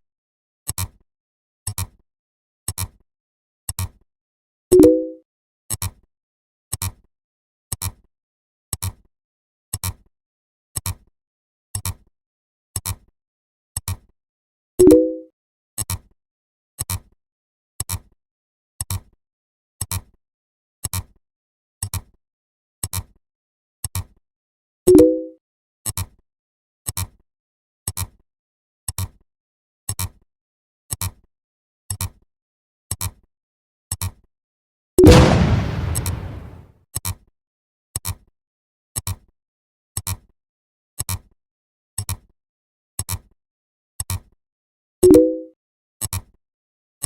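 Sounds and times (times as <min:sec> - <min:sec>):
short sharp clicks: 0:35.0 - 0:36.6.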